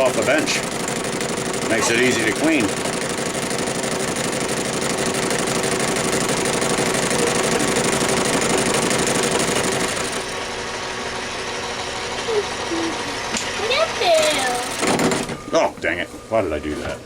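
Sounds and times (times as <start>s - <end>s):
metal lathe hum: 0.0s - 14.0s.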